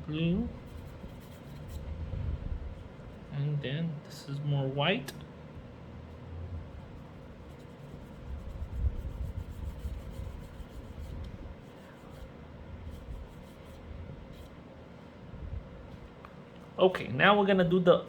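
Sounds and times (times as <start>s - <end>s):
paint rubbing and scratching: 0.3s - 1.9s, 6.1s - 15.2s
low bumps: 1.8s - 3.1s.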